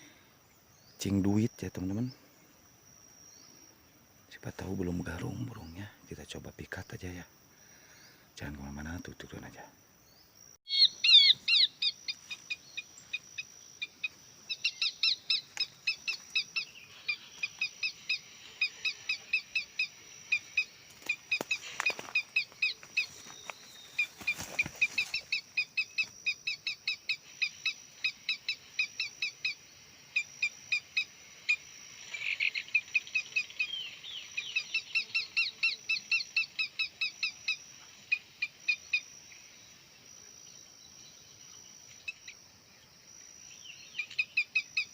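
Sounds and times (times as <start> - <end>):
high insect whine: 0.0 - 44.9
rapid high bird chirps: 10.2 - 39.4, 43.5 - 44.9.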